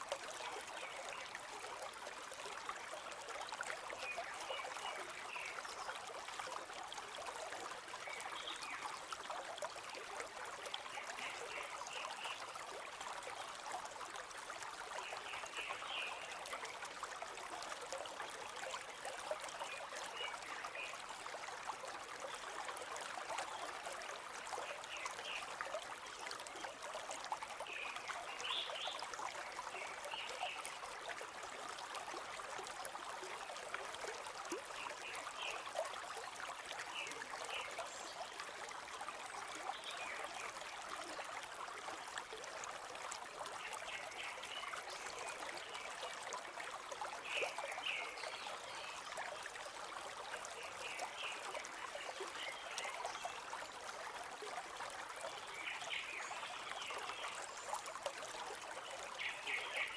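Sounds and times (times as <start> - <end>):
river water flowing over stones: 0.0 - 59.9.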